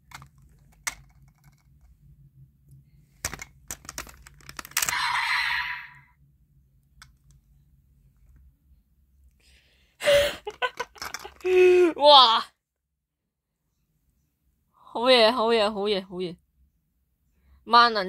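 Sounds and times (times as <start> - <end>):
plastic toy pieces clicking: 0.0 - 1.9, 3.2 - 5.0, 10.5 - 11.5.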